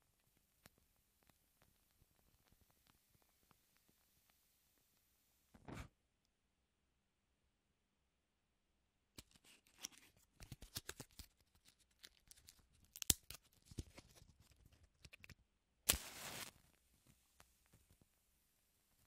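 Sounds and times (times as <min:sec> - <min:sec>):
match striking scrape: 0:15.9 - 0:16.6
match flaring hiss: 0:15.9 - 0:16.7.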